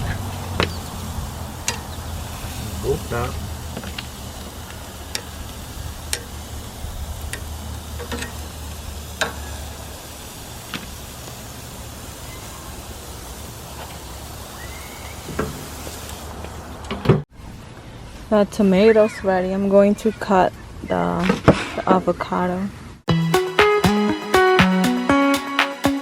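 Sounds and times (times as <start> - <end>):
patties sizzling on a grill: 0.0 - 16.3.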